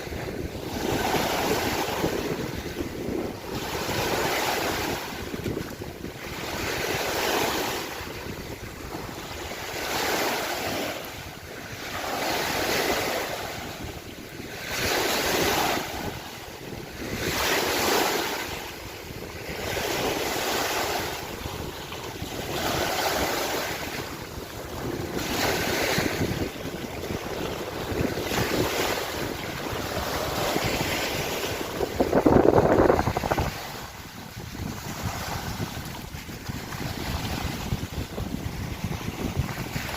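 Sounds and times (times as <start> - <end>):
lake waves washing in: 0.0 - 39.9
wind on microphone: 0.0 - 39.9.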